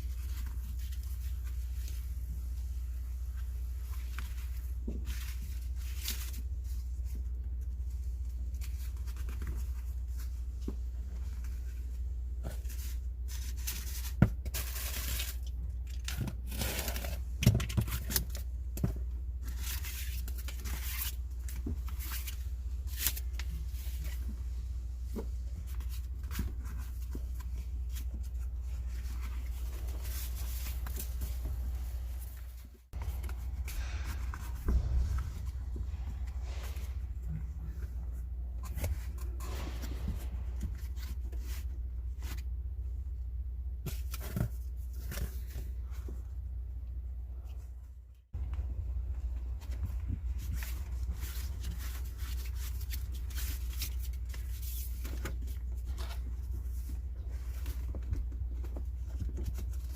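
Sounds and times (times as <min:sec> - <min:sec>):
steady low hum: 0:15.2 - 0:59.9.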